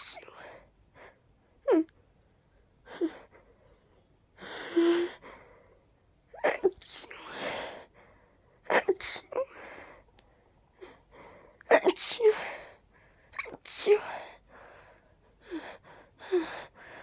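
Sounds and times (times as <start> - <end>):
person sneezing: 0.0 - 0.4, 6.4 - 7.6, 8.7 - 9.6, 13.4 - 14.2.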